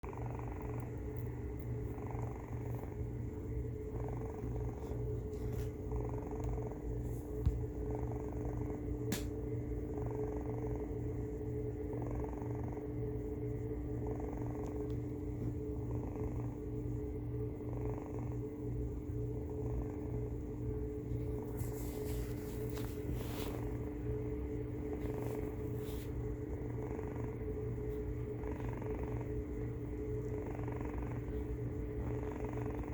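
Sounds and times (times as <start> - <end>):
faint hum: 0.0 - 32.9
pet snoring: 24.9 - 32.9.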